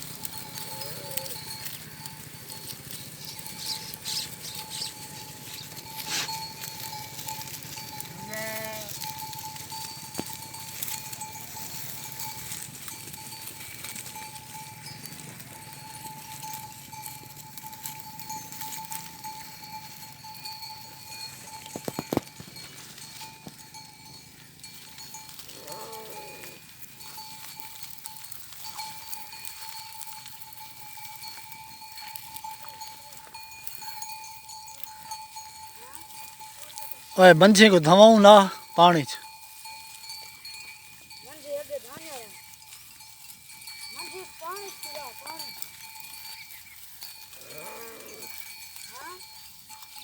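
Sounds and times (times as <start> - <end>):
livestock bells clinking: 0.0 - 50.0
sheep or goat bleat: 0.6 - 1.6, 8.0 - 9.3, 25.5 - 26.7, 47.4 - 48.4.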